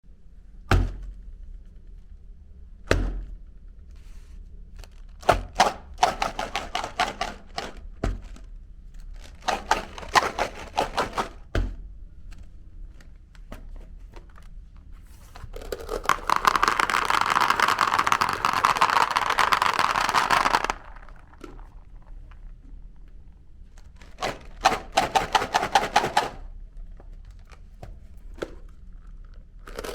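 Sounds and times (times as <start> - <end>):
candy cracking and clicking: 15.5 - 22.6, 29.0 - 29.9
meat grinder grinding: 15.6 - 22.0.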